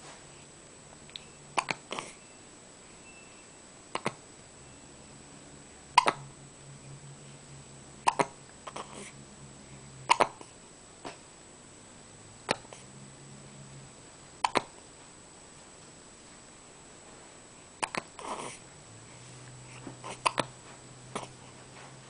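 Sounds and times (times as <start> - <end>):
hiccups: 1.6 - 2.2, 3.9 - 4.2, 6.0 - 6.3, 8.0 - 9.1, 10.1 - 10.5, 12.5 - 12.8, 14.4 - 14.7, 17.8 - 18.6, 20.0 - 20.5, 21.1 - 21.4.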